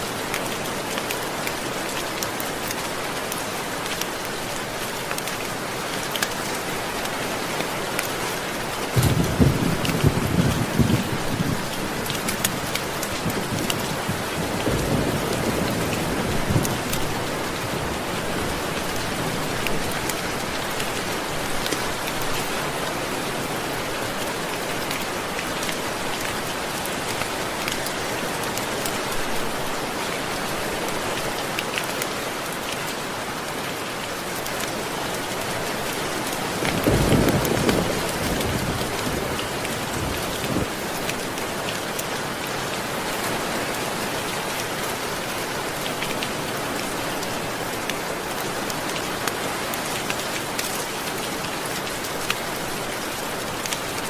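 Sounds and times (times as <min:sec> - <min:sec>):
steady rain pattering: 0:00.0 - 0:54.0
low thunder rumbling: 0:09.0 - 0:11.7.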